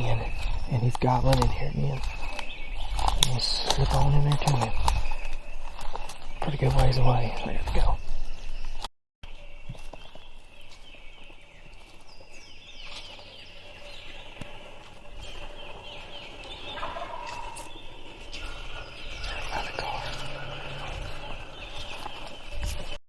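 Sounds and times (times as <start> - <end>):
distant turkey gobbling: 13.2 - 22.4.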